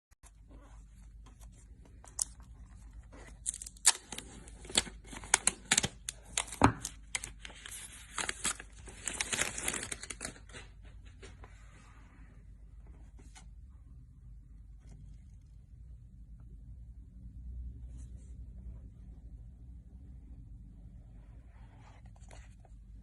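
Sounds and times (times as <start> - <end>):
plastic wrapping ripping: 3.4 - 10.5.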